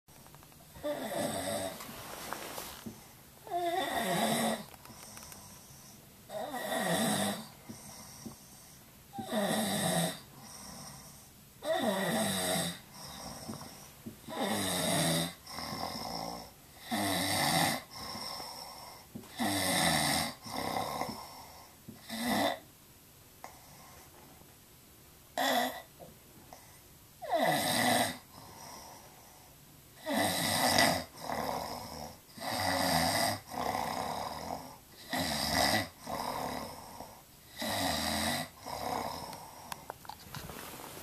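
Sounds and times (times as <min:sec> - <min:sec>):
quiet breathing: 0:00.7 - 0:09.5, 0:10.1 - 0:17.1, 0:17.8 - 0:22.6, 0:23.4 - 0:24.6, 0:25.8 - 0:27.0, 0:28.1 - 0:30.1, 0:35.8 - 0:41.0
person snoring: 0:00.8 - 0:01.8, 0:02.8 - 0:22.6, 0:27.2 - 0:29.4, 0:30.0 - 0:39.9.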